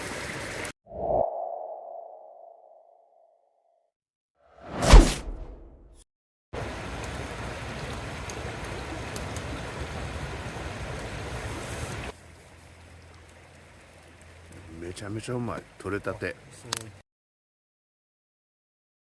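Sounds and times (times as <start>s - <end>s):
whoosh transition effect: 0.9s - 2.9s
wood fire hissing and crackling: 6.6s - 16.9s.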